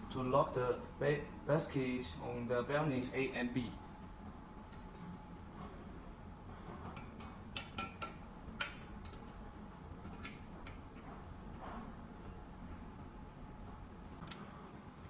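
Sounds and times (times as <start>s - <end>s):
metal parts clicking and tapping: 7.0s - 9.4s, 10.0s - 10.8s.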